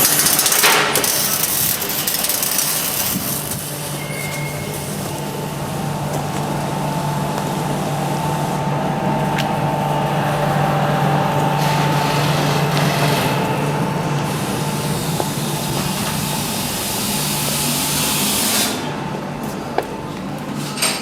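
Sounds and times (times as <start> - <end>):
machinery low hum: 0.0 - 21.0
loud hiss: 11.7 - 18.9.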